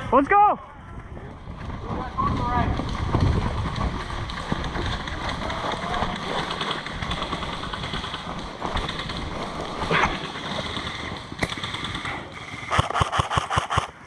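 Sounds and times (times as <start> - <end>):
wind buffeting microphone: 0.6 - 10.3
running footsteps: 0.8 - 14.0
gear rattling: 2.7 - 14.0
sharp click: 12.7 - 13.9.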